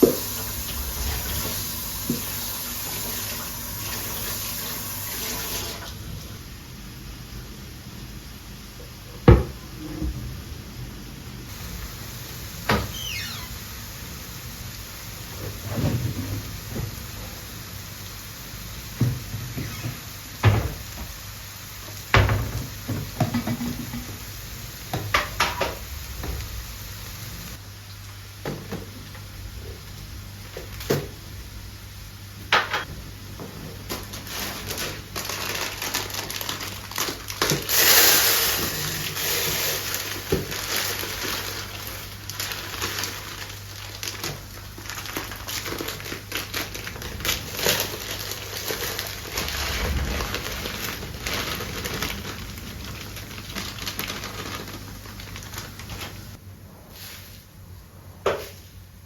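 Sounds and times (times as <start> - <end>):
crinkling: 33.4 - 56.4
rustling: 38.8 - 57.5.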